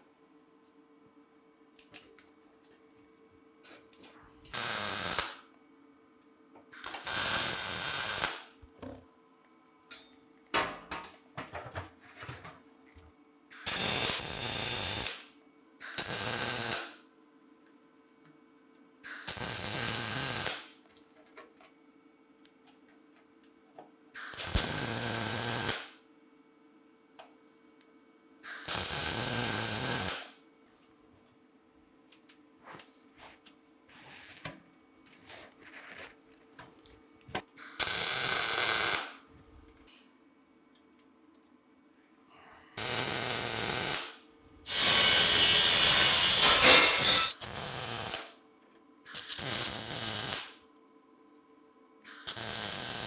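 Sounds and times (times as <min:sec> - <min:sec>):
faint steady hum: 0:00.0 - 0:04.5
welder hissing: 0:04.5 - 0:05.4, 0:06.8 - 0:08.4, 0:13.5 - 0:15.2, 0:15.8 - 0:16.9, 0:24.2 - 0:25.9, 0:28.4 - 0:30.3, 0:37.6 - 0:39.2, 0:42.8 - 0:48.3, 0:49.1 - 0:50.5, 0:52.1 - 0:53.0.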